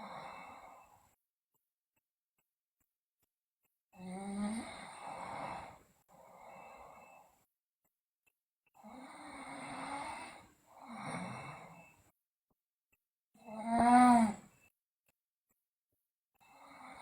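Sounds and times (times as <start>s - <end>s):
low snoring buzz: 4.0s - 7.2s, 8.9s - 11.9s, 13.5s - 14.4s.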